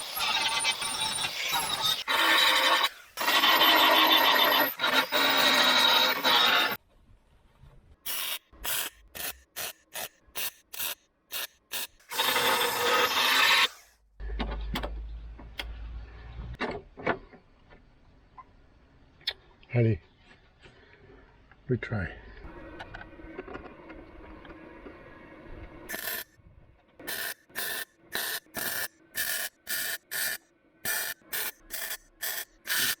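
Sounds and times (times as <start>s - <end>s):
power tool rasping on metal: 0.0s - 6.8s, 10.8s - 13.8s.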